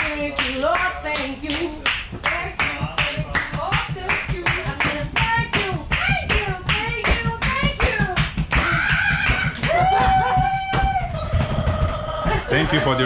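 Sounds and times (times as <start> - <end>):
rhythmic hand clapping: 0.0 - 13.0.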